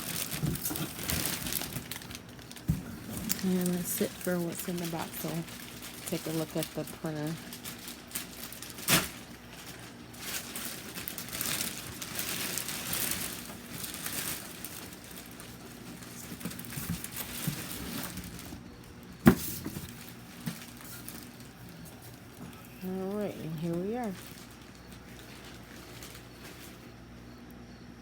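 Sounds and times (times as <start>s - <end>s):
packaging rustling and crinkling: 0.0s - 27.3s.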